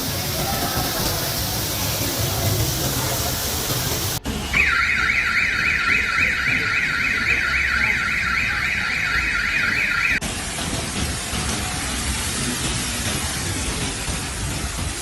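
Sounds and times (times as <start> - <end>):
rain: 0.0 - 15.0
car alarm warbling: 4.2 - 10.2.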